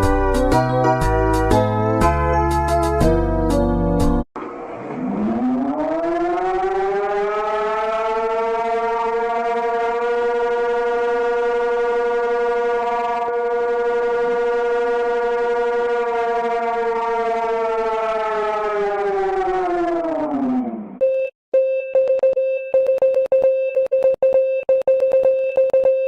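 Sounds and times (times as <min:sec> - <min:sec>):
siren winding down: 0:04.4 - 0:21.0.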